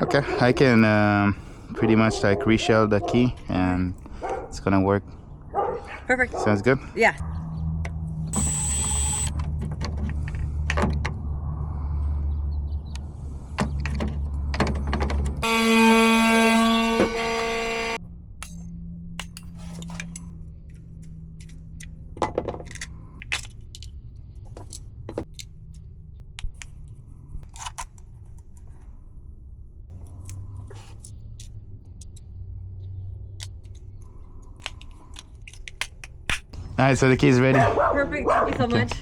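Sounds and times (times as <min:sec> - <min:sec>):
steady low hum: 0:08.3 - 0:09.3, 0:15.4 - 0:19.2.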